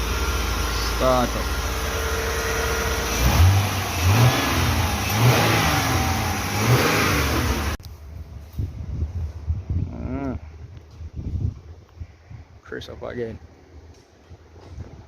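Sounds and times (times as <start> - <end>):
car engine revving: 0.0 - 7.8.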